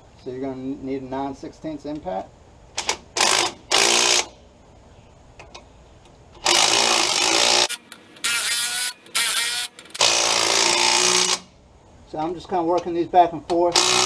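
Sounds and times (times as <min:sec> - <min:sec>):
impact wrench bursts: 0:07.6 - 0:10.8.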